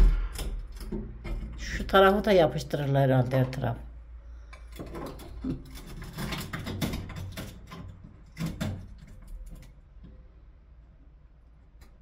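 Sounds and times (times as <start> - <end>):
glass pane clicks and knocks: 4.8 - 9.7.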